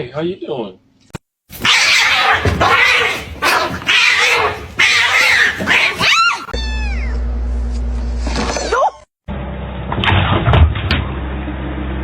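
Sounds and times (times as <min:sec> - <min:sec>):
cat meowing: 0:01.6 - 0:07.2
cat yowling: 0:01.6 - 0:07.2.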